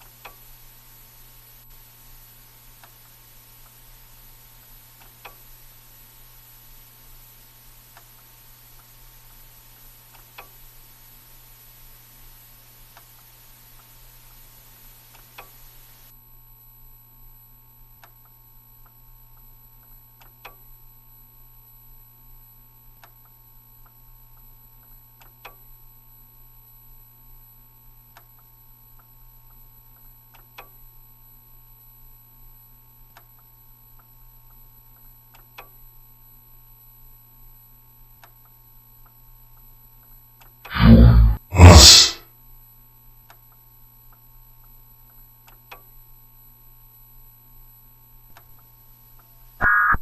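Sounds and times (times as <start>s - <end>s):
soft regular ticks: 0.0s - 1.1s, 1.7s - 5.9s, 6.7s - 11.0s, 12.2s - 14.4s, 15.0s - 15.7s, 18.0s - 20.6s, 23.0s - 25.7s, 28.1s - 30.8s, 33.1s - 35.8s, 38.1s - 39.2s, 43.3s - 46.0s
faint steady hum: 0.0s - 25.0s.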